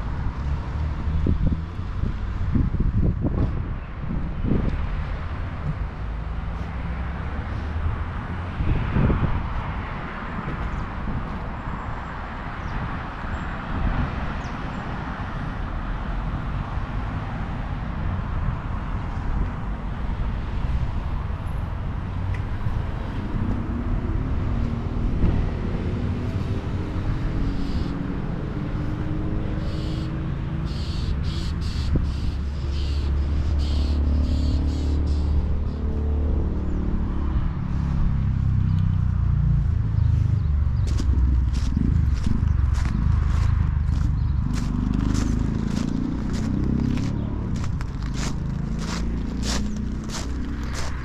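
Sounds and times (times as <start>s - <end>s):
motor vehicle engine hum: 0.0s - 51.0s
low rumble: 39.6s - 46.4s.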